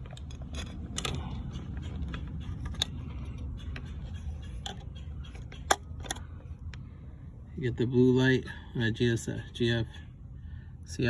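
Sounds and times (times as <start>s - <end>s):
small clicks and knocks: 0.0s - 6.8s
steady low rumble: 0.0s - 11.0s.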